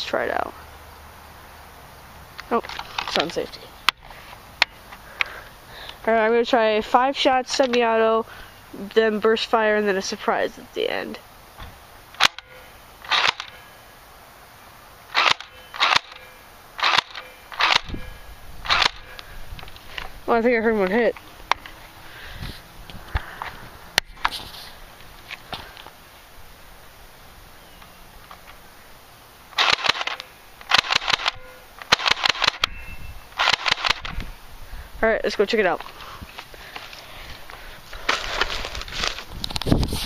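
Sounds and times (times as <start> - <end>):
airsoft rifle shots: 12.2 - 13.6, 15.1 - 16.2, 16.8 - 18.0, 18.6 - 19.2, 29.6 - 32.8, 33.4 - 34.2.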